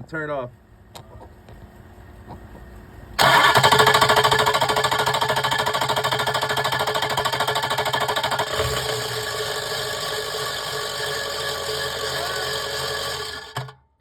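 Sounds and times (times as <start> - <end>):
diesel engine running: 0.6 - 13.8
grinding rattle: 3.2 - 13.8
diesel engine cranking: 3.2 - 14.0.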